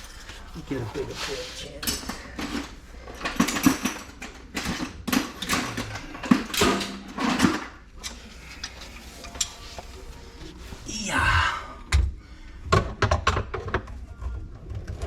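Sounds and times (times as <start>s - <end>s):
clicking rattling handling noises: 1.8s - 9.9s.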